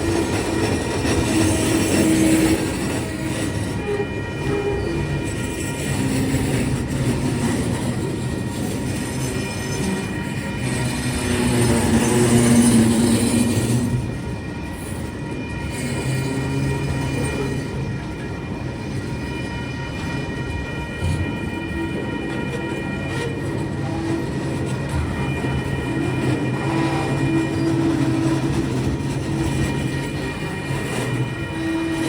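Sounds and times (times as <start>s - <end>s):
train wagons rumbling on rails: 0.0s - 32.0s
faint high squeal: 19.3s - 32.0s.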